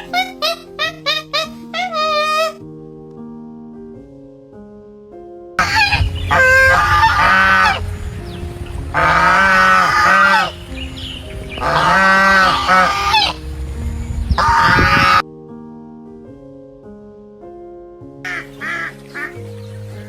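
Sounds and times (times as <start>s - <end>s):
soft piano music: 0.0s - 20.0s
goose honking: 5.6s - 7.9s, 8.7s - 10.6s, 11.6s - 13.4s, 14.4s - 15.2s.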